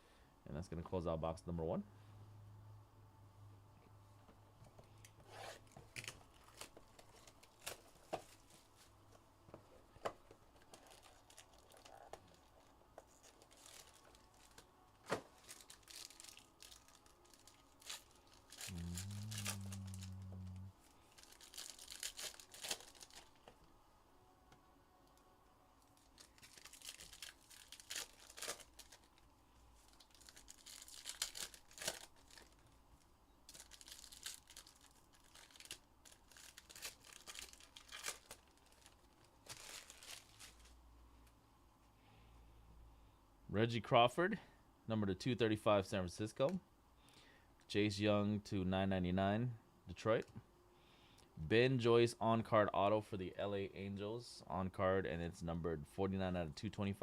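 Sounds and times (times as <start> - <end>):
low steady buzz: 0.0 - 30.7
plastic wrap and foil crinkling: 5.9 - 9.0, 10.5 - 23.5, 25.8 - 32.8, 33.4 - 40.8.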